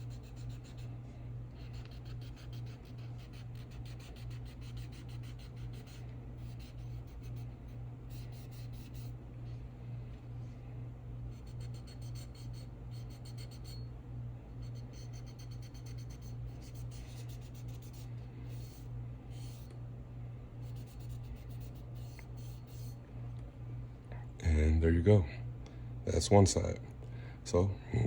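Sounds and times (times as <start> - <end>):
rag rubbing on metal: 0.0 - 0.9, 14.7 - 19.7, 20.6 - 23.0
steady low hum: 0.0 - 28.0.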